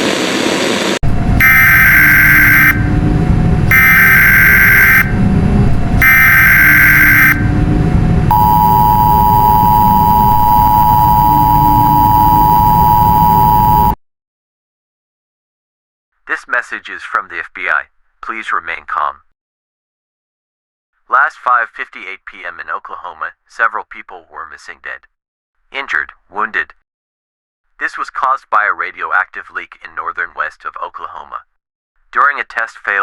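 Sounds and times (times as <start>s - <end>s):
static blast: 0.0s - 10.3s
two-tone attention signal: 1.1s - 14.0s
screeching digital data bursts: 1.4s - 3.0s, 3.7s - 5.2s, 6.0s - 7.5s.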